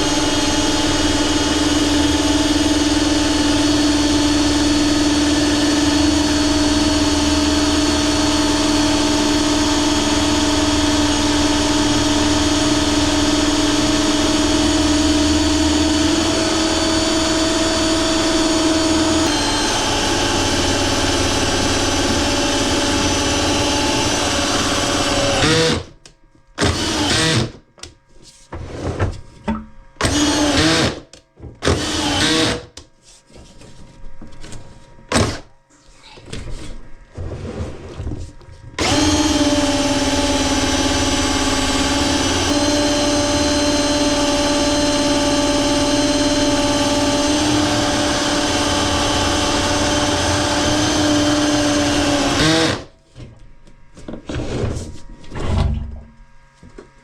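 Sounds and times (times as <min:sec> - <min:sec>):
drain snake motor spinning: 0:07.1 - 0:25.7, 0:38.8 - 0:52.8.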